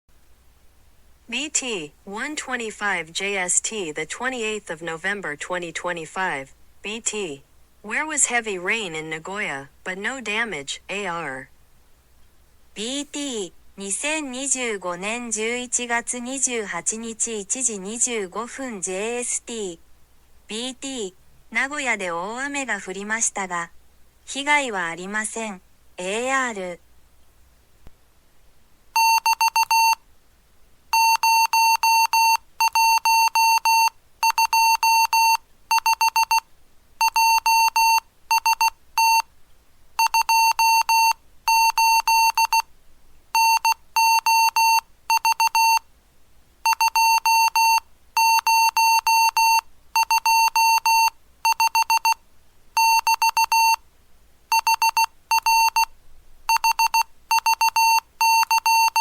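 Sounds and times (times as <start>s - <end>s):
morse code buzzy tone: 29.0s - 30.0s, 30.9s - 39.3s, 40.0s - 42.7s, 43.3s - 45.9s, 46.6s - 52.2s, 52.8s - 53.8s, 54.5s - 55.9s, 56.5s - 59.0s.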